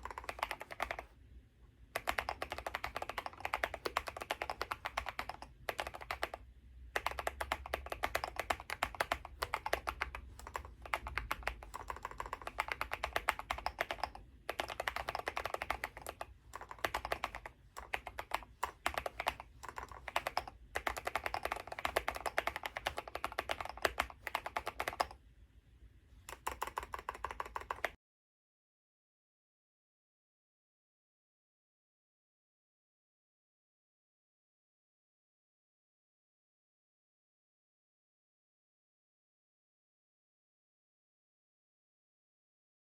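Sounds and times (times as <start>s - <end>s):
mechanical keyboard typing: 0.0s - 1.1s, 2.0s - 6.4s, 7.0s - 25.2s, 26.3s - 28.0s.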